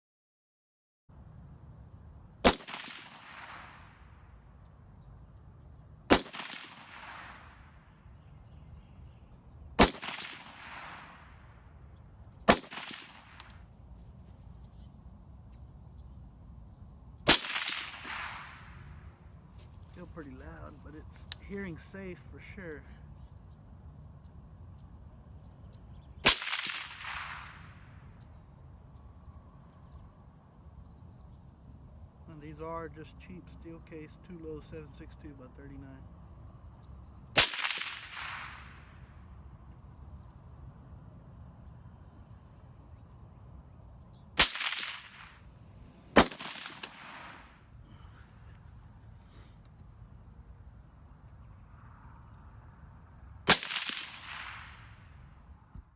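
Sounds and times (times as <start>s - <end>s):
rifle shots with echo: 2.4s - 4.3s, 6.1s - 8.0s, 9.8s - 11.8s, 12.4s - 13.7s, 17.2s - 19.2s, 26.2s - 28.1s, 37.3s - 39.3s, 44.4s - 47.7s, 53.4s - 55.2s.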